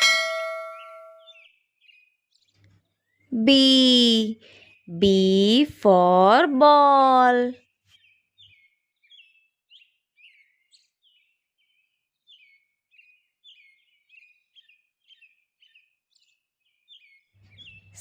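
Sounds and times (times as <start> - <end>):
faint bird chirping: 0.0 - 18.0.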